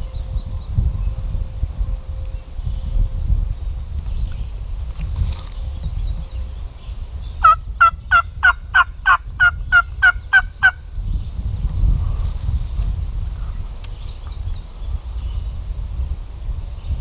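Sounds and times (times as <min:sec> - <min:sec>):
wild turkey yelping: 0:07.4 - 0:10.8.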